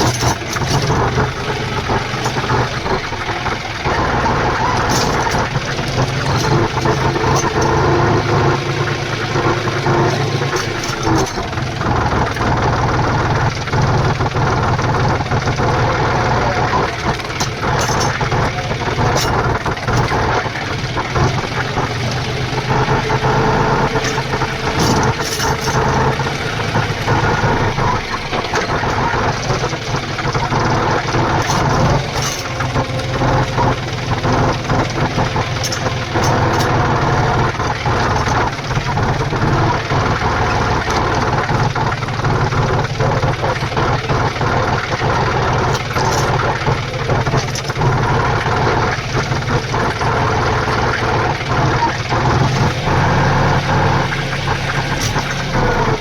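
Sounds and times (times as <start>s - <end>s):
tractor engine idling: 0.0s - 56.0s
sharp metal clanks: 15.5s - 38.8s.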